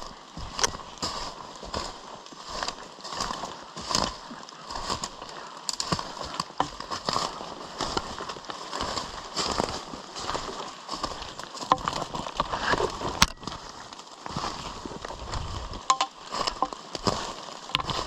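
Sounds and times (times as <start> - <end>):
footsteps on wet forest ground: 0.0 - 18.0
rain gear rustling: 0.0 - 18.0
hiking pole clicks: 0.4 - 1.9, 4.8 - 9.7, 11.0 - 13.6, 15.4 - 18.0.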